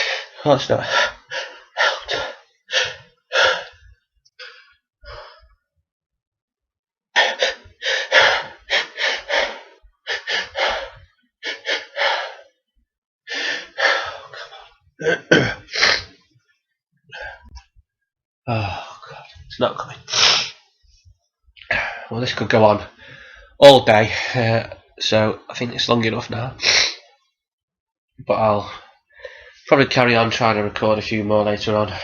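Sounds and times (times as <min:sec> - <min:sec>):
man gasping breaths: 0:00.0 - 0:05.6, 0:07.2 - 0:12.6, 0:23.0 - 0:23.6.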